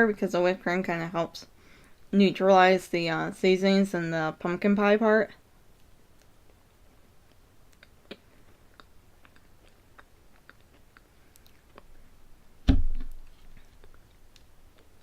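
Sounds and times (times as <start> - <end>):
chewing soft food: 5.7 - 12.2, 13.0 - 15.0
wet mouth clicks: 7.3 - 11.9
dull thump: 12.6 - 13.2.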